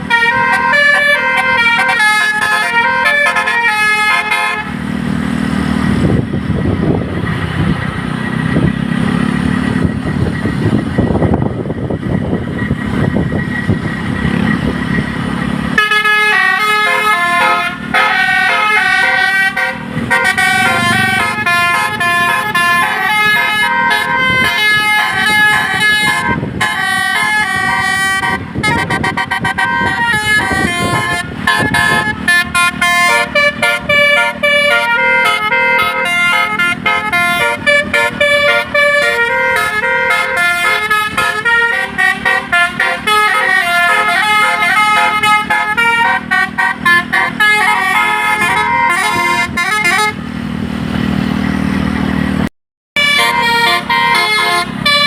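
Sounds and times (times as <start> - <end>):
low rumble of moving bus: 0.0 - 55.0
musical air horn melody: 0.1 - 4.8, 15.8 - 50.2, 53.0 - 55.0.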